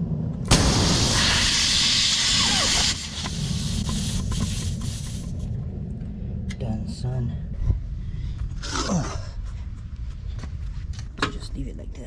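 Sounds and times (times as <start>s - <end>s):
compressed air hissing into tire: 0.5s - 5.6s.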